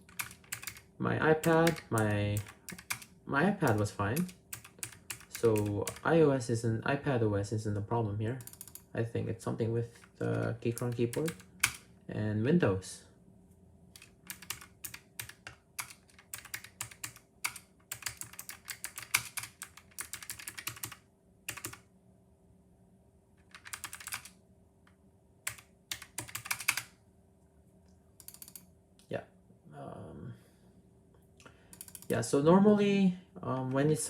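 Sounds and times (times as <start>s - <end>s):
mechanical keyboard typing: 0.0s - 6.1s, 8.4s - 8.9s, 10.0s - 11.9s, 14.0s - 21.8s, 23.4s - 24.4s, 25.5s - 26.9s, 28.2s - 28.7s, 31.7s - 32.2s.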